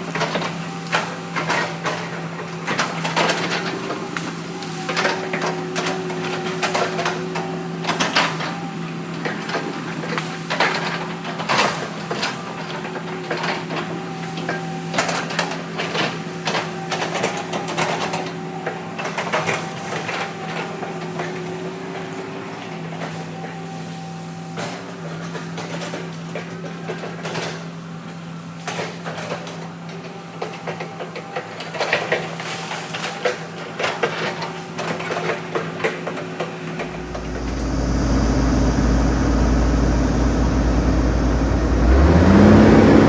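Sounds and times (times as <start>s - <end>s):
diesel engine running: 36.8s - 43.0s.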